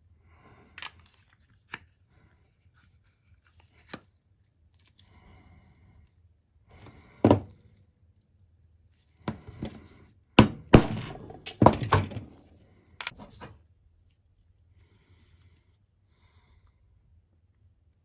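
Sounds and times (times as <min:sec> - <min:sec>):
sharp knocks and clunks: 0:10.4 - 0:12.3.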